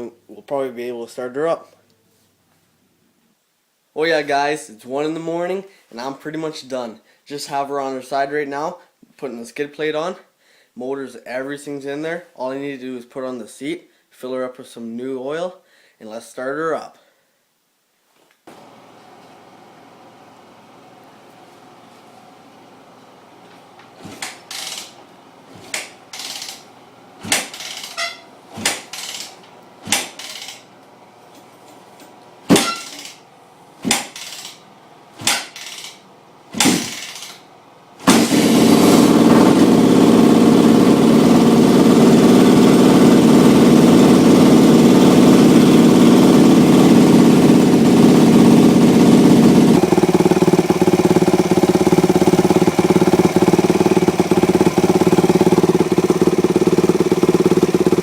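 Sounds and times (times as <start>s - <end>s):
motorcycle kick-start kicks: 24.0s - 25.0s, 25.6s - 26.6s, 27.2s - 30.7s, 32.5s - 33.2s, 33.8s - 34.6s, 35.2s - 36.0s, 36.6s - 37.4s, 38.0s - 40.6s
motorcycle engine running: 38.1s - 58.0s.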